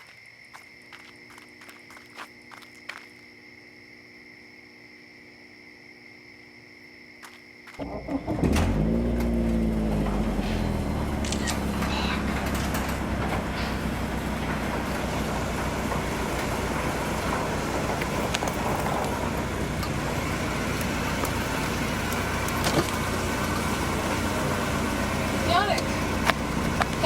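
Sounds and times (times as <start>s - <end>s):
car engine running: 7.8s - 27.0s.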